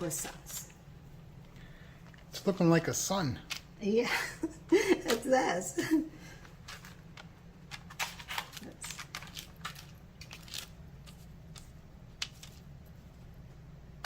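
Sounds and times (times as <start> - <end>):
low steady hum: 0.0 - 14.0
food and utensils clicking and rustling: 6.3 - 13.0.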